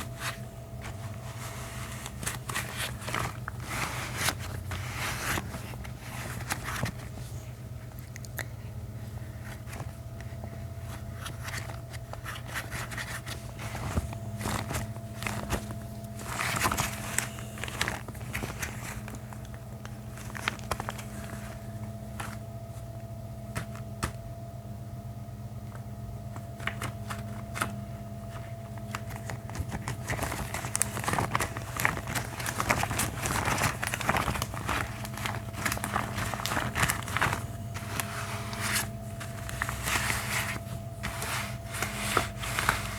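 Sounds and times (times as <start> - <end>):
low hum: 0.0 - 42.9
gloved hands crinkling: 0.1 - 7.2, 11.0 - 22.4, 28.3 - 42.9.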